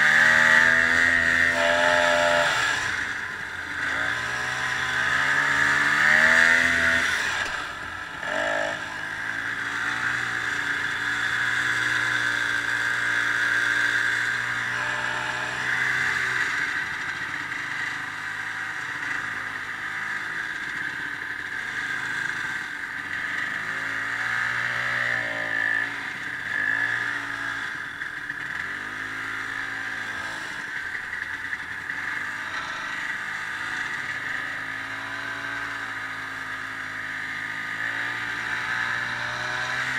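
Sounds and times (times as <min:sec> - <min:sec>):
snowmobile engine running: 0:00.0 - 0:13.0.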